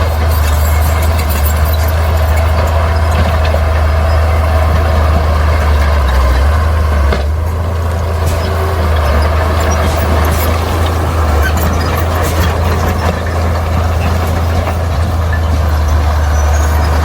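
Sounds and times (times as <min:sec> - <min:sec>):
bulldozer diesel engine droning: 0:00.0 - 0:17.0.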